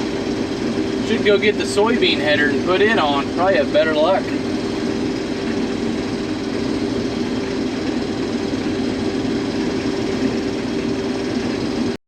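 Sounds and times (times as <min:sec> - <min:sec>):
combine harvester drone: 0:00.0 - 0:12.0.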